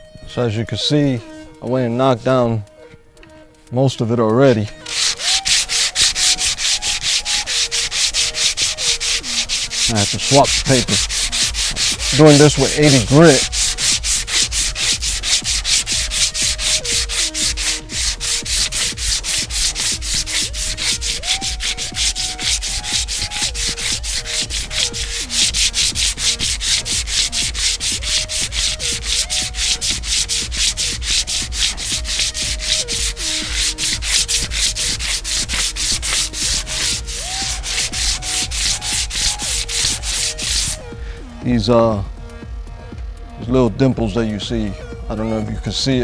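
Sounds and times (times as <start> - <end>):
sandpaper rasping on filler: 4.5 - 41.0.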